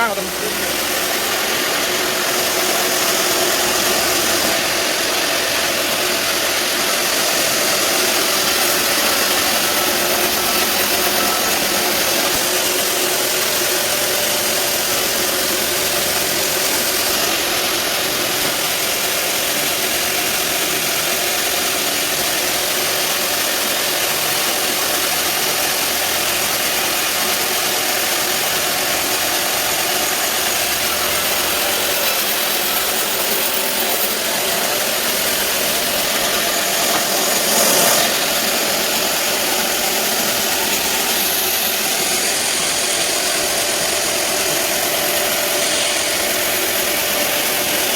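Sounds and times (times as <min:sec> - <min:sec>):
bandsaw ripping a log: 0:30.3 - 0:47.8.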